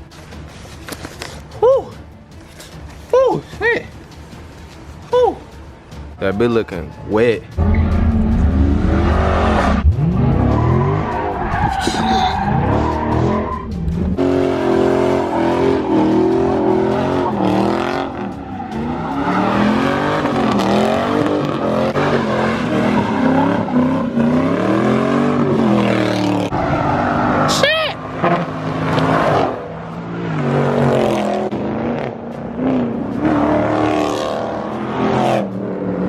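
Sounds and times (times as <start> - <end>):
engine revving hard: 7.6 - 13.4, 14.2 - 27.5, 30.2 - 36.0
tires skidding: 7.6 - 36.0.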